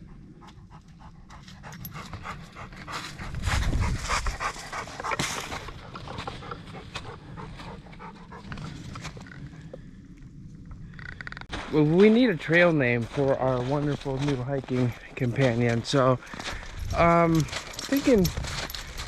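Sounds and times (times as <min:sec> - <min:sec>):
dog panting: 0:00.0 - 0:09.2
footsteps crunching in snow: 0:02.1 - 0:07.8, 0:11.5 - 0:19.0.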